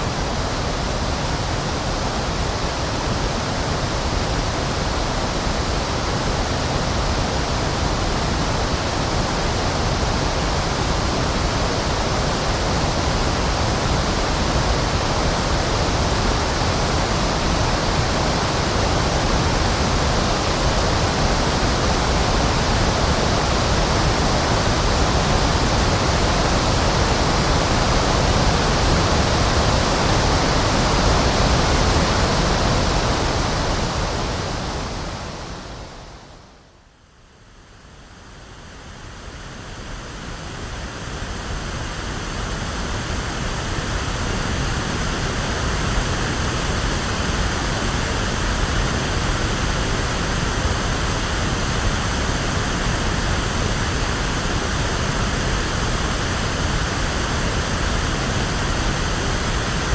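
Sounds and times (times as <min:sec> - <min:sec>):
pink noise hiss: 0:00.0 - 0:36.8.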